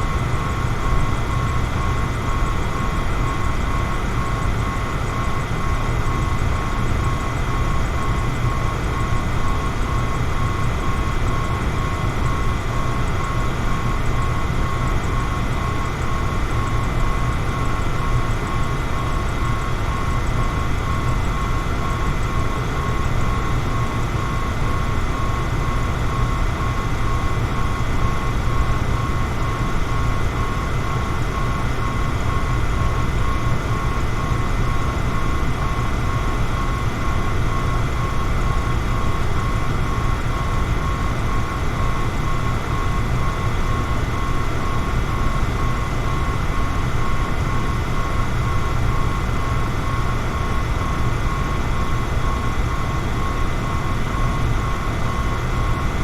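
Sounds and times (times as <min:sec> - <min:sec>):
electric fan running: 0:00.0 - 0:56.0.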